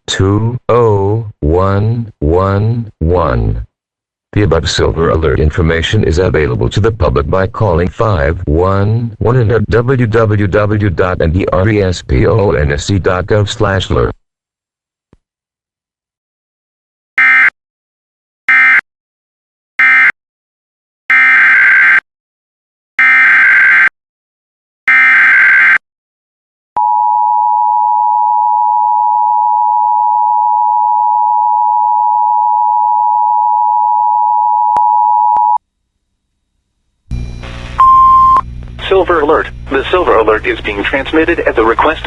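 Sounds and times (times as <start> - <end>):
data tone bursts: 37.1 - 38.5
steady loud attention tone: 37.1 - 42.0.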